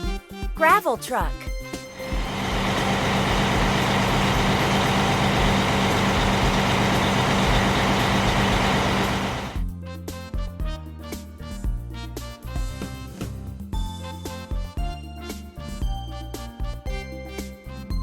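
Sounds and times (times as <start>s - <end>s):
truck engine rattling: 1.9s - 9.6s.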